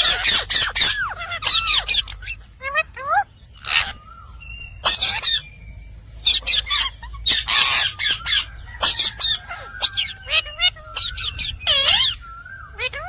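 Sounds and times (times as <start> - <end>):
parakeet squawking: 0.0 - 5.5, 6.2 - 13.0
parakeet whistled notes: 3.8 - 5.5, 6.2 - 13.0.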